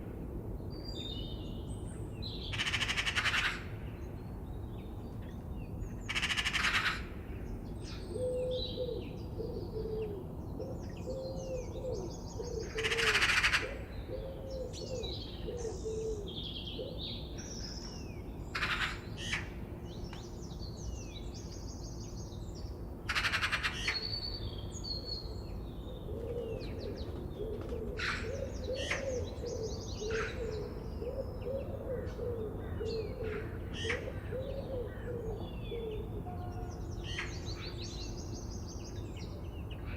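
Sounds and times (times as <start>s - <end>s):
birds chirping and singing: 4.5s - 39.9s
loud harsh bird calls: 6.0s - 7.1s, 18.5s - 19.5s, 23.0s - 24.4s.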